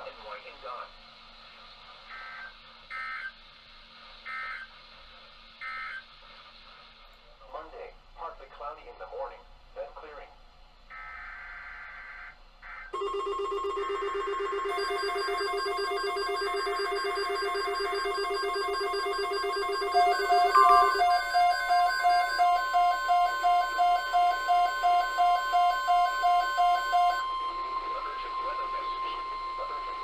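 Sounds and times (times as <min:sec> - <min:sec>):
fast buzzing warble alarm: 0:02.1 - 0:03.4, 0:04.2 - 0:04.8, 0:05.6 - 0:06.1, 0:10.9 - 0:30.0
steady alarm tone: 0:10.9 - 0:30.0
electronic beeps: 0:11.0 - 0:30.0.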